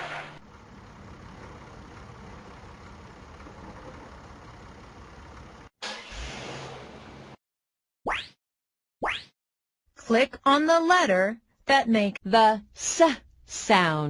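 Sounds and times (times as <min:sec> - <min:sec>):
bus engine idling: 0:00.1 - 0:06.1.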